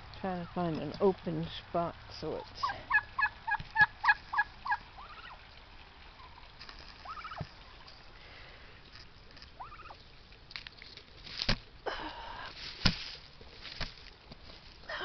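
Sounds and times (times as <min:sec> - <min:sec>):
turkeys calling: 0:02.6 - 0:08.2, 0:09.4 - 0:10.1.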